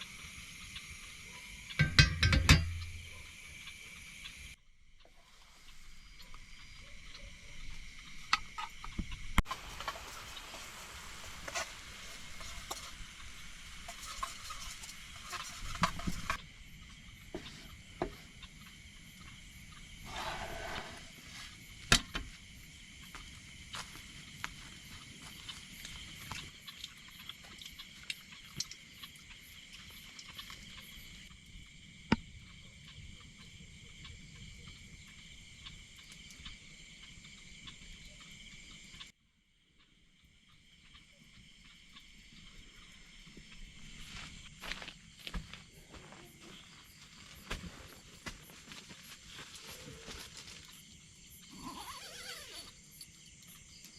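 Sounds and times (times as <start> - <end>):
night insects chirping: 0.0 - 53.9
rustling hiss: 2.8 - 31.9.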